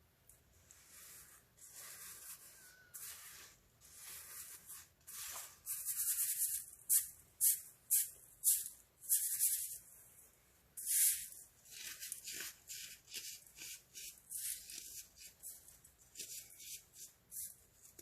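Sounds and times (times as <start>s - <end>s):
baking soda crunching: 0.8s - 6.6s, 10.8s - 18.0s.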